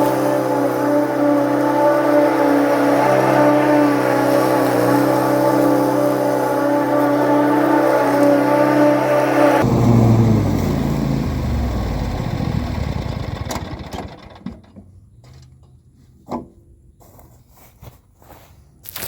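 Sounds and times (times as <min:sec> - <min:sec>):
mower engine winding down: 0:00.0 - 0:14.8.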